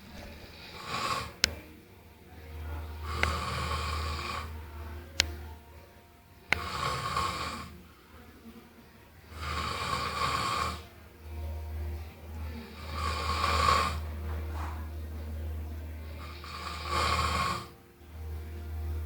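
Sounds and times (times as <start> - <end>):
steady low hum: 0.0 - 19.0
rasping snores: 0.5 - 1.5, 3.0 - 4.6, 6.6 - 7.8, 9.3 - 10.9, 12.7 - 14.1, 16.0 - 17.7
sharp click: 1.4 - 1.6.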